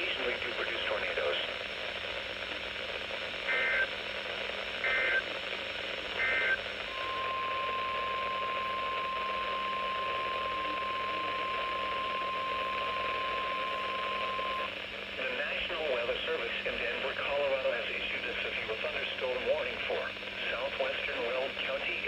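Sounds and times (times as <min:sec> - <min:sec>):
radio hiss: 0:00.0 - 0:22.0
steady warning alarm tone: 0:06.2 - 0:14.7.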